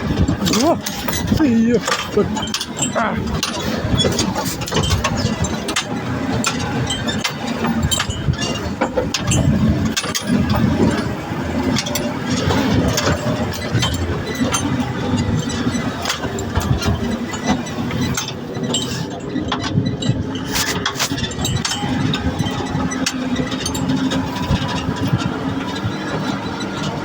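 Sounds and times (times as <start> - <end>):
off-road vehicle engine running: 0.0 - 27.0.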